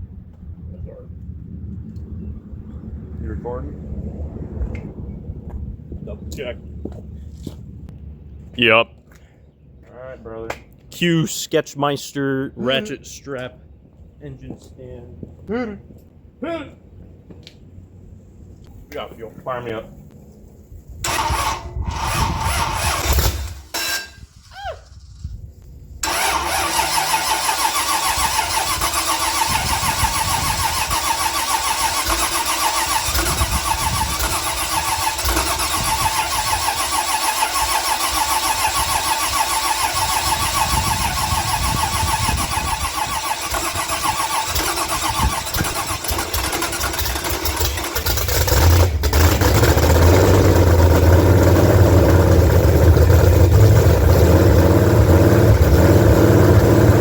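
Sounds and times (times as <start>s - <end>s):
engine cranking and running: 21.0s - 24.5s, 26.0s - 57.0s.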